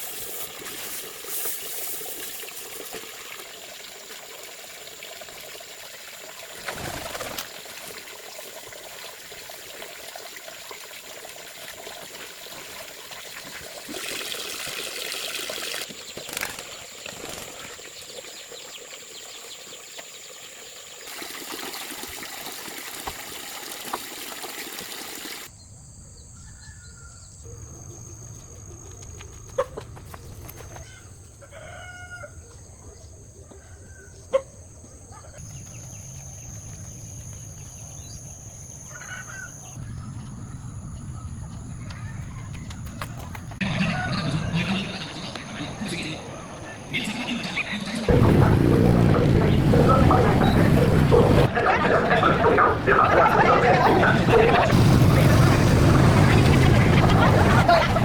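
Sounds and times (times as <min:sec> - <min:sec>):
rooster crowing: 0:26.4 - 0:27.4, 0:30.9 - 0:32.5, 0:43.6 - 0:45.0
chickens clucking: 0:43.6 - 0:48.2
rushing noise: 0:43.7 - 0:58.0.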